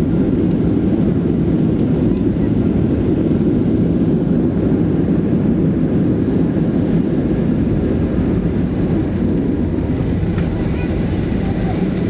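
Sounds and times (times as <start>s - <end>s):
jet engine cabin rumble: 0.0s - 12.0s.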